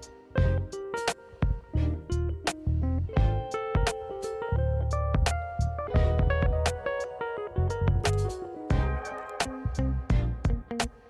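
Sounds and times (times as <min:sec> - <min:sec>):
drums: 0:00.0 - 0:04.5, 0:05.1 - 0:11.0
plucked guitar-like notes: 0:00.0 - 0:11.0.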